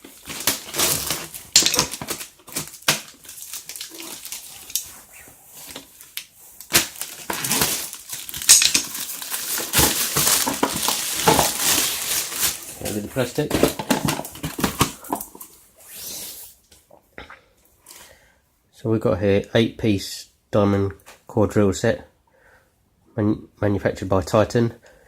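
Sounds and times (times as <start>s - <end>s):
plastic packaging crinkling: 0.0s - 15.5s.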